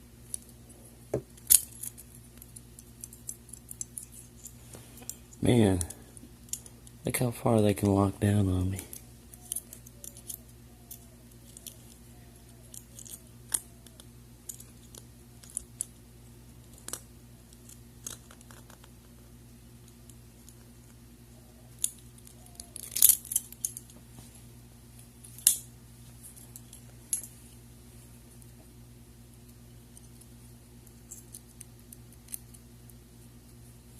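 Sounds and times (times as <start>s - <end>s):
steady low hum: 0.0s - 33.9s
handcuffs clicking and rattling: 1.4s - 5.2s, 8.9s - 16.0s, 21.8s - 23.9s, 25.3s - 25.7s.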